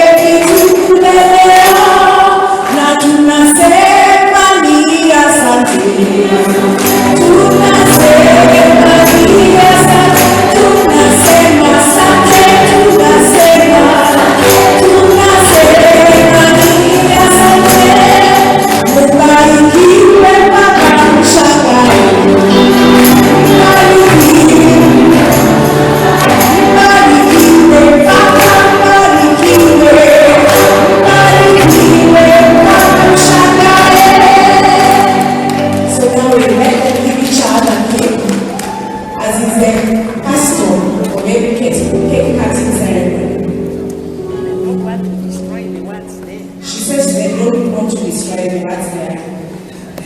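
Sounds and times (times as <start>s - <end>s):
group singing together: 0.0s - 4.7s, 5.6s - 36.8s.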